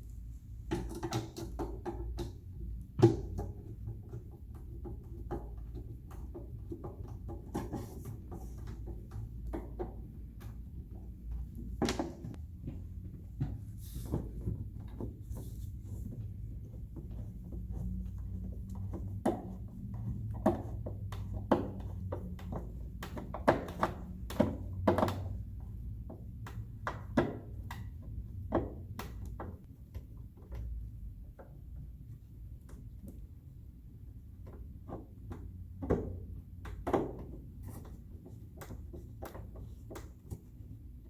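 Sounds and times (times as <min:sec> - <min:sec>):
plastic parts clicking and knocking: 0:00.7 - 0:12.4, 0:13.4 - 0:31.8.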